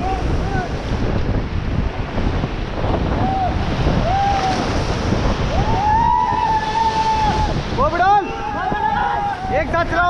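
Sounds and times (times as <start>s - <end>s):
wind buffeting microphone: 0.0s - 10.0s
whitewater rapids rushing: 1.6s - 10.0s
people shouting: 3.2s - 4.8s, 5.5s - 7.6s, 8.2s - 9.7s.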